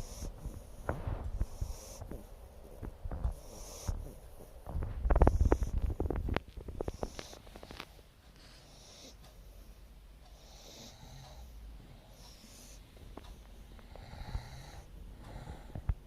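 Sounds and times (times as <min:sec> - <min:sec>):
person snoring: 0:13.9 - 0:15.7.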